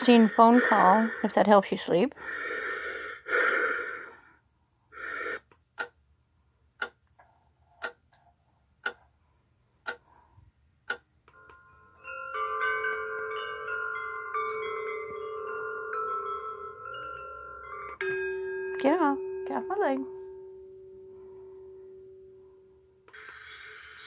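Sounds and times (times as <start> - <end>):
clock ticking: 0.0 - 1.6, 5.0 - 6.0, 6.8 - 7.2, 7.8 - 8.2, 8.8 - 9.1, 9.8 - 10.2, 10.8 - 11.6
tinkling chime lullaby: 11.3 - 24.0.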